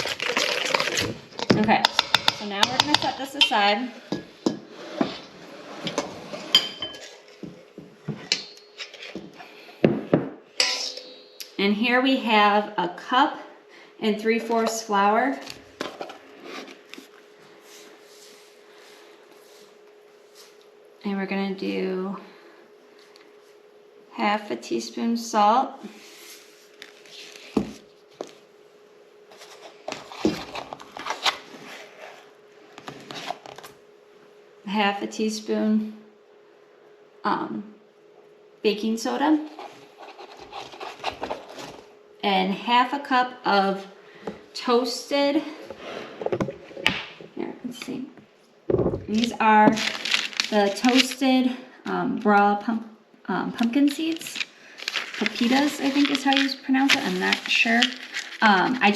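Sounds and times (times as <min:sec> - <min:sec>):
faint steady hum: 0:00.0 - 0:58.9
bowls and utensils knocking and clinking: 0:00.3 - 0:04.7, 0:05.9 - 0:09.3, 0:10.0 - 0:11.4.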